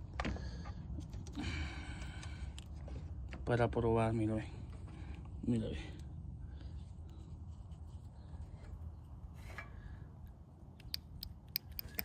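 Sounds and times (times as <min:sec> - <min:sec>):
test leads clicking on battery: 0:10.8 - 0:12.0.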